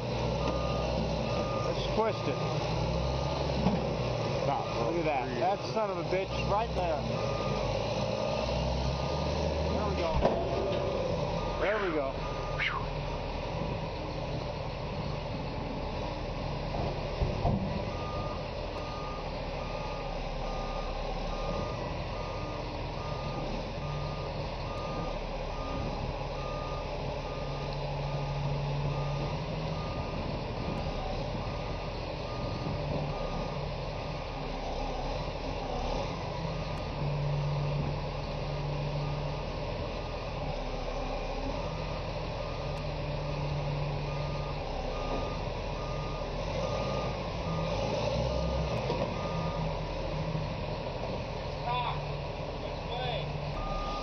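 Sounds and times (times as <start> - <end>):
diesel engine running: 0.0 - 54.0
reversing alarm beeping: 0.4 - 3.4, 4.5 - 7.8, 11.1 - 12.9, 17.9 - 33.6, 40.8 - 49.8, 53.5 - 54.0.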